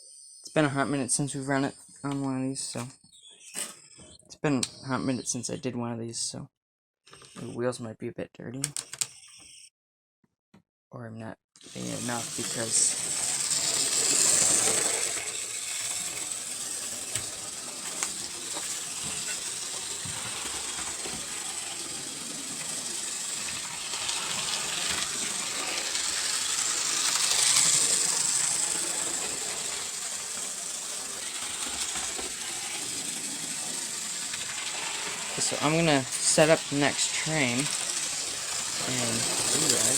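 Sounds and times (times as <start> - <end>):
model train motor whining on rails: 11.6 - 39.9.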